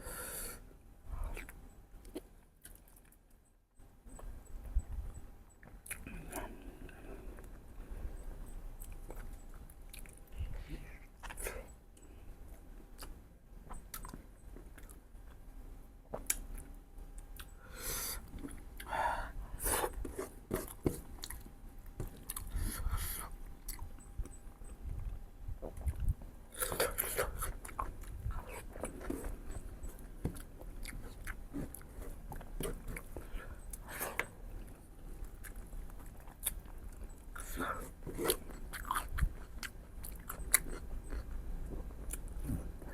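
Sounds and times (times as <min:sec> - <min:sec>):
close chewing and biting: 0:19.7 - 0:42.8.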